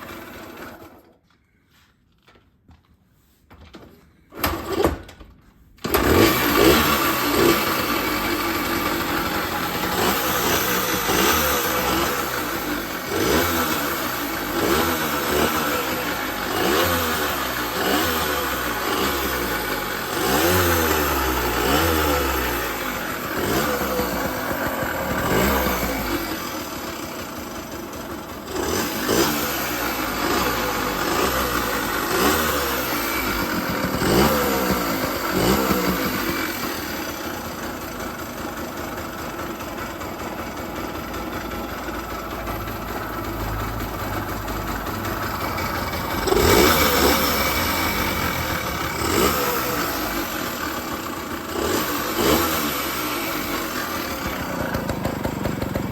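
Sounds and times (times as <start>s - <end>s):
two-stroke engine revving: 0.0s - 1.0s, 5.8s - 55.9s.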